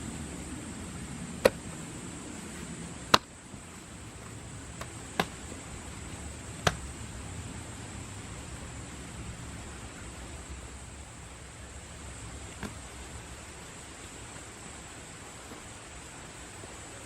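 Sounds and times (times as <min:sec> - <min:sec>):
steady background hiss: 0:00.0 - 0:17.0
sharp short knocks: 0:01.4 - 0:01.6, 0:04.8 - 0:05.4.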